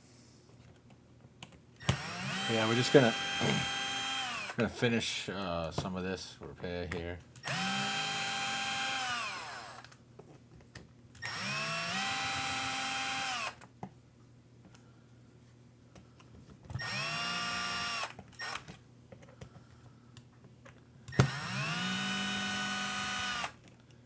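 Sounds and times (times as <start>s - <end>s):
power screwdriver whirring: 1.8s - 4.6s, 7.4s - 10.0s, 11.2s - 13.6s, 16.8s - 18.8s, 21.1s - 23.6s.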